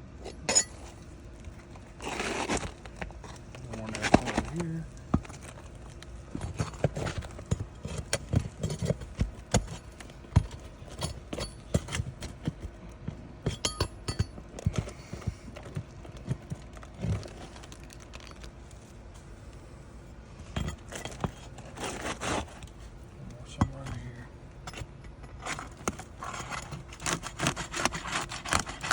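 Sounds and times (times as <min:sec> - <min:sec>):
hand tools clicking and knocking: 0:06.4 - 0:12.7, 0:13.4 - 0:17.3.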